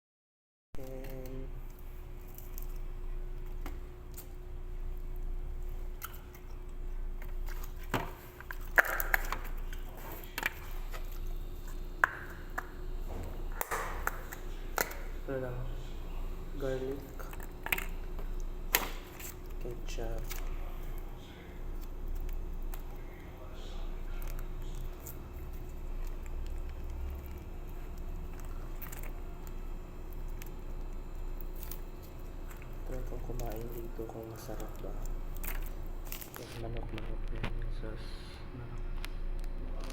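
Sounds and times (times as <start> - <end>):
steady low hum: 0.8 - 39.9
containers clicking and tapping: 7.5 - 12.8
plastic packaging crinkling: 16.6 - 37.6.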